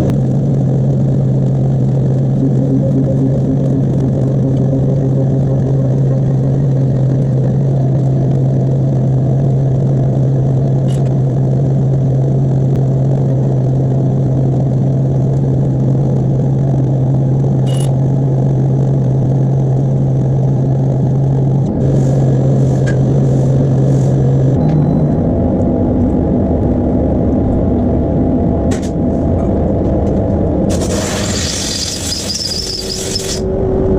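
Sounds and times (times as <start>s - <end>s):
machine humming with rushing noise: 0.0s - 33.9s.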